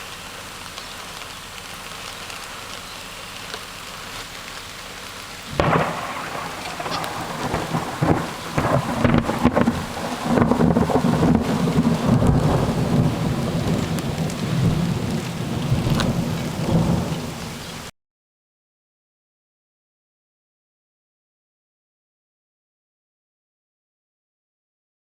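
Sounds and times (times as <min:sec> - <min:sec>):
crackles: 0:00.0 - 0:17.9
heavy rain falling: 0:00.0 - 0:17.9
rolling thunder: 0:05.5 - 0:17.9.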